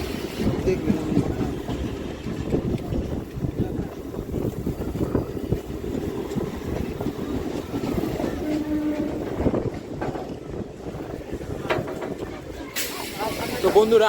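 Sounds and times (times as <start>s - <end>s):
electric train rumbling: 0.0s - 14.0s
train horn tone: 8.2s - 9.7s.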